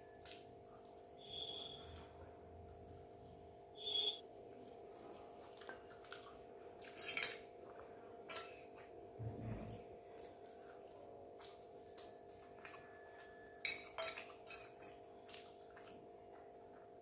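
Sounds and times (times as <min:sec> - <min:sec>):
cutlery clinking against a dish: 0:06.8 - 0:07.5, 0:08.3 - 0:08.8, 0:12.7 - 0:15.4.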